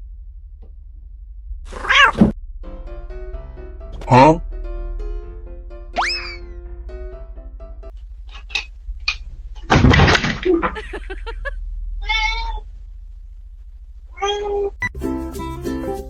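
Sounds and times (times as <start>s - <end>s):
low steady hum: 0.0s - 15.9s
cat meowing: 1.7s - 2.4s, 12.0s - 12.6s, 14.2s - 14.8s.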